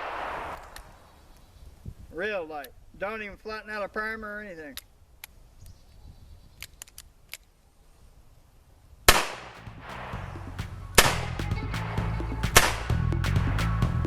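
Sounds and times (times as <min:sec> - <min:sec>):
revolver gunshot: 0:09.1 - 0:10.4
background music: 0:09.4 - 0:14.0.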